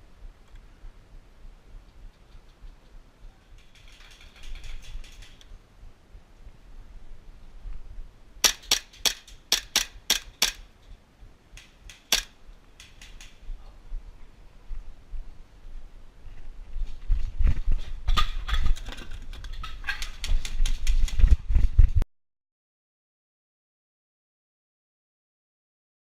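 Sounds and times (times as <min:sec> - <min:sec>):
airsoft gun shots: 0:08.4 - 0:10.7, 0:11.6 - 0:13.4
distant airsoft gun burst: 0:08.4 - 0:10.7, 0:11.6 - 0:13.4.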